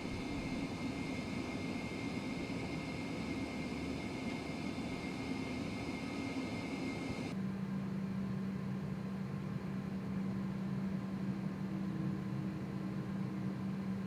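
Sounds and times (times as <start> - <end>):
high whine: 0.0 - 7.4
jet engine rush: 0.0 - 7.4
low hum: 0.0 - 7.4.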